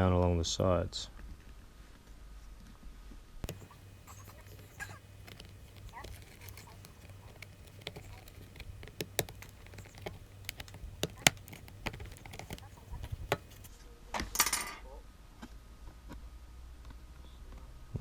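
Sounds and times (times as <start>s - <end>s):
plastic clips snapping: 3.4s - 13.7s.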